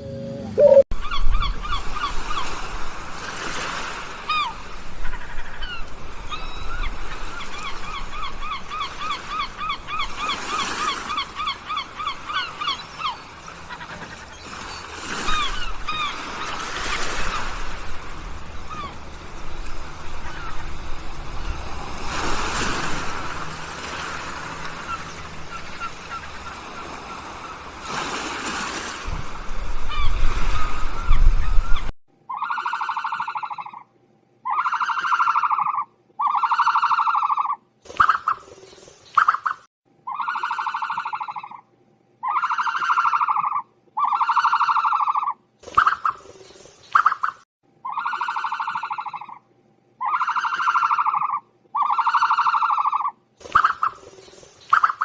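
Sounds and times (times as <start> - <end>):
birds honking calls: 4.2 - 28.3, 42.2 - 49.4, 50.0 - 55.0.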